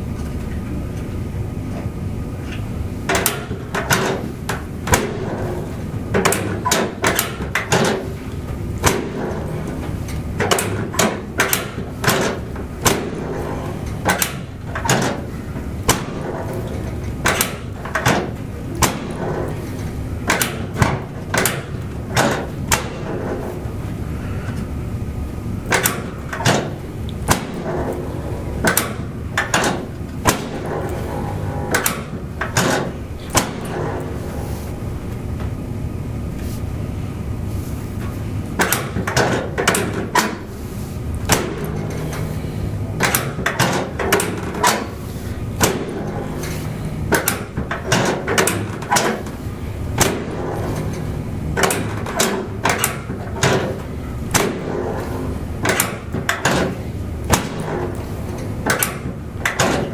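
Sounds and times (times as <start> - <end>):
sharp knocks and clacks: 3.1 - 23.7, 25.7 - 33.9.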